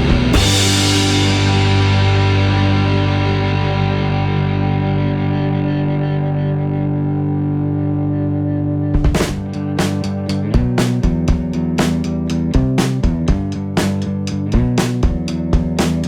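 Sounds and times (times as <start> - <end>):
drum hits: 0.0 - 2.2, 9.0 - 16.0
distorted electric guitar chord: 0.0 - 11.5.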